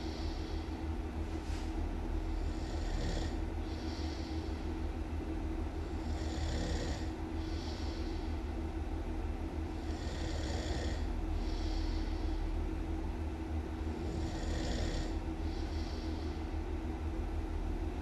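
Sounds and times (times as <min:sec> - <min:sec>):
steady low hum: 0:00.0 - 0:18.0
person snoring loudly: 0:02.4 - 0:04.1, 0:06.0 - 0:07.1, 0:09.8 - 0:11.1, 0:14.0 - 0:15.2.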